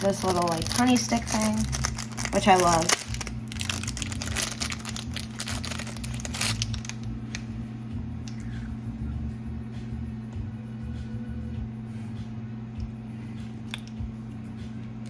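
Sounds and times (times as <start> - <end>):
crinkling crackles: 0.0 - 7.4
steady low hum: 0.0 - 15.0.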